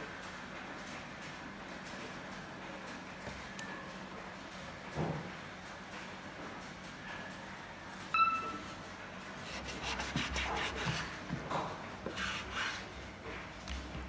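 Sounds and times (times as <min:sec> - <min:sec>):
high ringing tone: 0:08.1 - 0:08.8.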